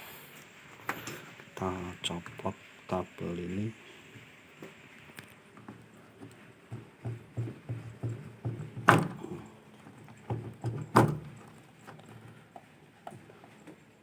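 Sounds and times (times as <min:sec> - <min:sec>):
soft knocks: 0:05.5 - 0:12.4.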